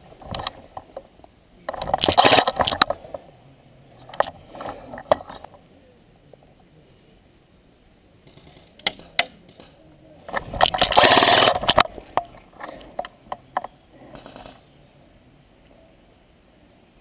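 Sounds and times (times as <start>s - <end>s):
airsoft rifle full-auto burst: 10.7s - 11.8s.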